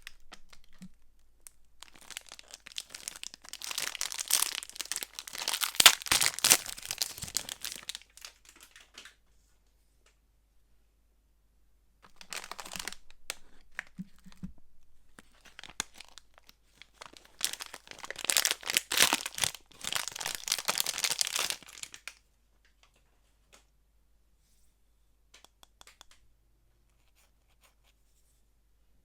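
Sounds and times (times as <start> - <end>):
wrapper crinkling and tearing: 1.8 - 9.2, 12.0 - 13.9, 15.3 - 22.2.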